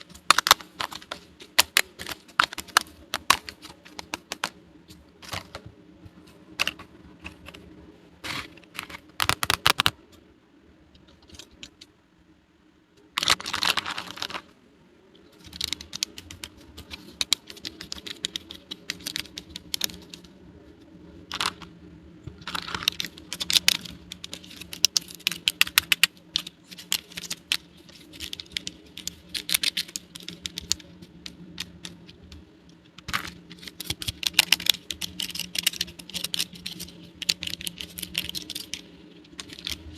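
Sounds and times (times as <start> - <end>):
plastic toy pieces clicking: 0.1 - 4.6, 8.8 - 10.0, 15.4 - 20.3, 21.3 - 21.7, 22.4 - 39.9.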